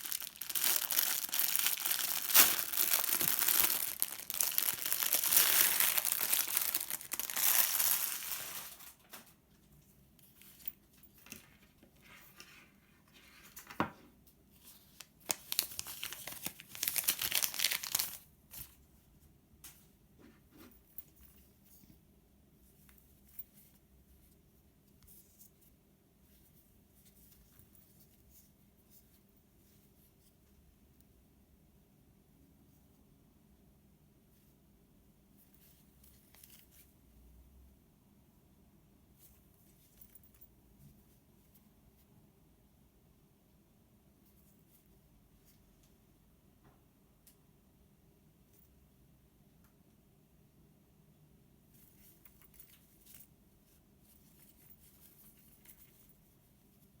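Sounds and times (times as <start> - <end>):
packaging crinkling and tearing: 0.0 - 9.2, 15.3 - 18.2.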